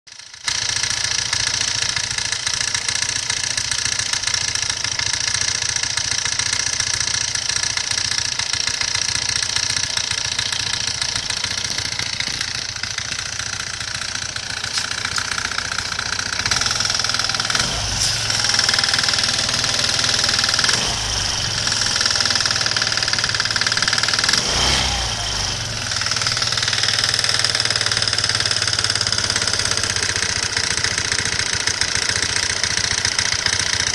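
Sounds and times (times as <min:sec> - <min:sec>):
motorcycle engine running: 0:00.1 - 0:33.9
abnormal mechanical noise: 0:10.1 - 0:30.0.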